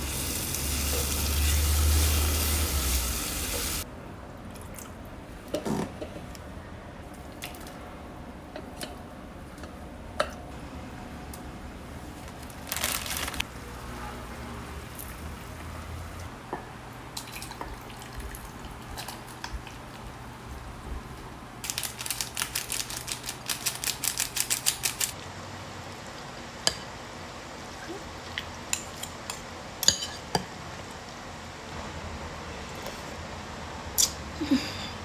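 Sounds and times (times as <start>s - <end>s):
cutlery scraping a bowl: 29.8s - 30.4s.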